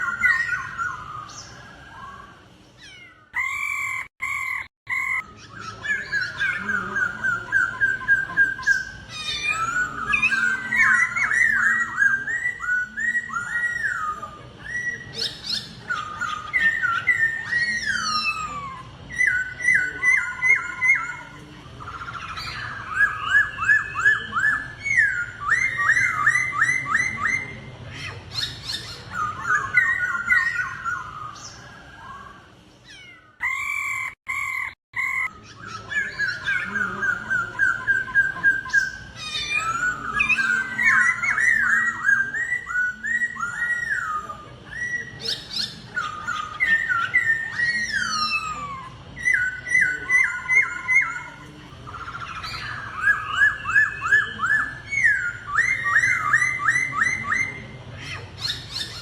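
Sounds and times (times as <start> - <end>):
bird singing whistled phrases: 0.0 - 27.7, 28.3 - 57.8.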